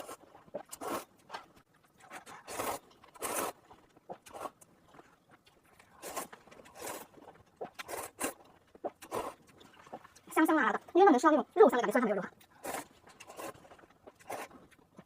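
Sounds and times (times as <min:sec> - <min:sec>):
person slurping noodles: 0:00.0 - 0:01.1, 0:02.0 - 0:04.6, 0:05.9 - 0:09.4, 0:12.6 - 0:14.6.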